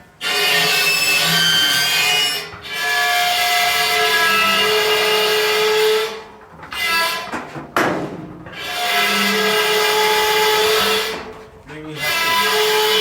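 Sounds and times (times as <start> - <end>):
harsh rasp: 8.6 - 13.0.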